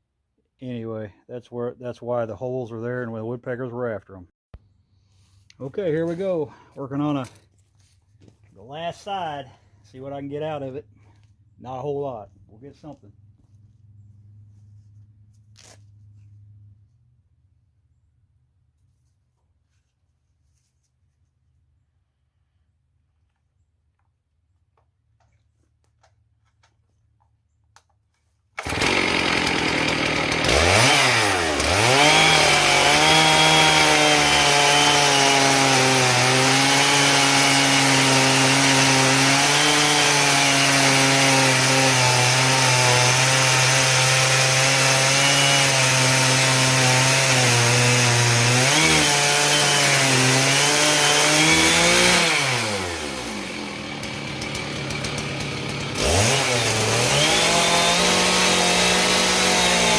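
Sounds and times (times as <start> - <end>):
chainsaw cutting through log: 28.6 - 59.9.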